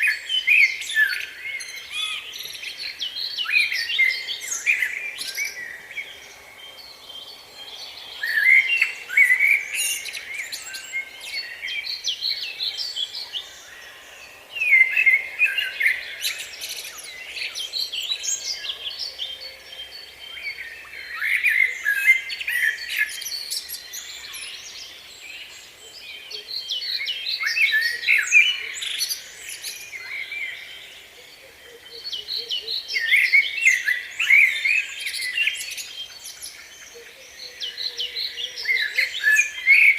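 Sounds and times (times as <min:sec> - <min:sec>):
quiet bird chirps: 0:00.0 - 0:39.9
songbird singing: 0:00.0 - 0:39.9.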